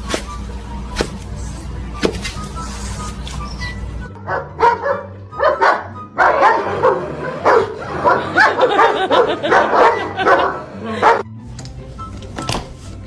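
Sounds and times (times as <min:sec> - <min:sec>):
music playing: 0:00.0 - 0:13.0
dog barking and yipping: 0:04.2 - 0:11.2.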